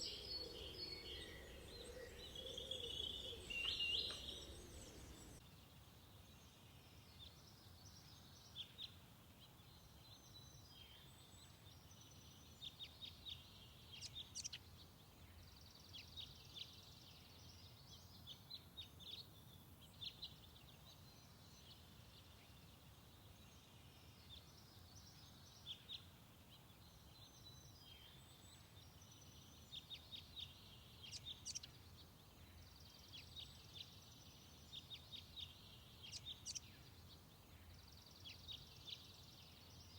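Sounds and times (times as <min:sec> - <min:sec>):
small birds chirping: 0:00.0 - 0:05.4, 0:07.2 - 0:39.9.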